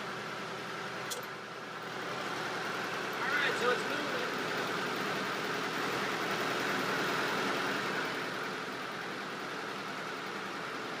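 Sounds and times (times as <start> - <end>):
diesel engine running: 0.0 - 11.0.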